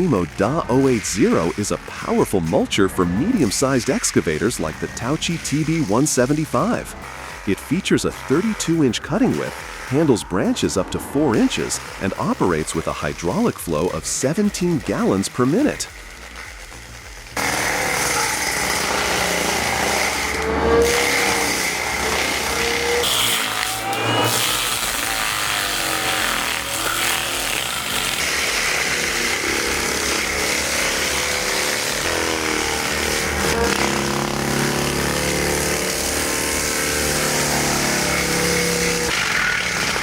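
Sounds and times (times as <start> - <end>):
forestry mulcher working: 17.4 - 28.4.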